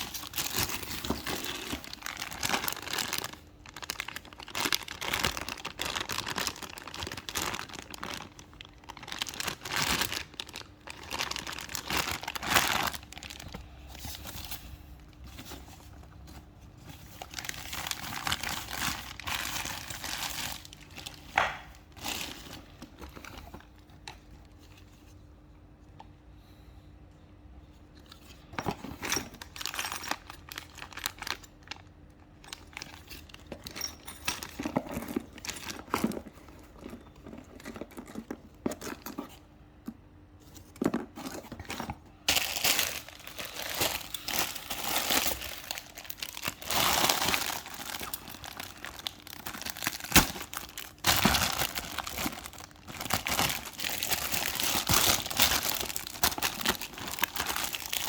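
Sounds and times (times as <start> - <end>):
packaging crumpling and tearing: 0.0 - 24.8, 28.9 - 33.7, 41.2 - 58.0.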